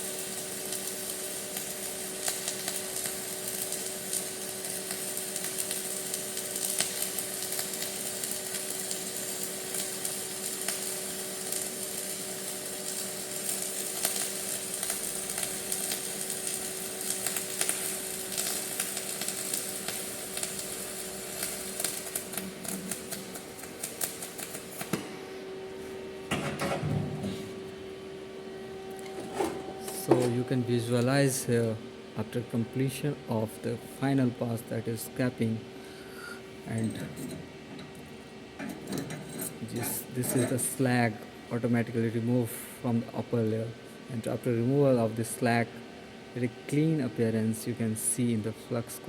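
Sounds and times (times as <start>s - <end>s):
welding arc crackling and sizzling: 0.0s - 45.6s, 46.4s - 49.0s
steady hum: 19.6s - 49.0s.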